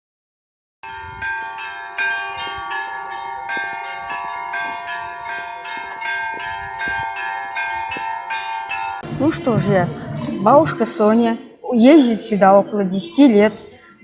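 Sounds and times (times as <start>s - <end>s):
church bells ringing: 0.8s - 11.4s.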